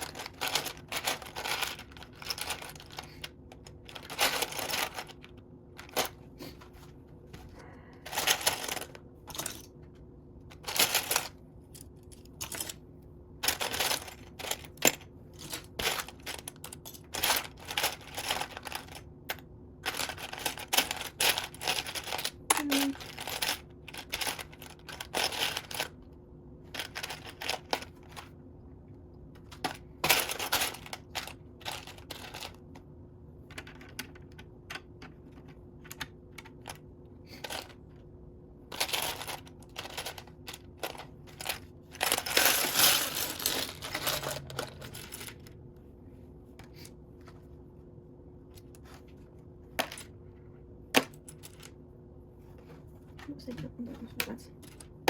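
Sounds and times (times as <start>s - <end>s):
plastic bricks clicking and clattering: 0.0s - 6.2s, 8.0s - 9.8s, 10.5s - 12.8s, 13.4s - 26.0s, 26.7s - 28.3s, 38.7s - 45.5s.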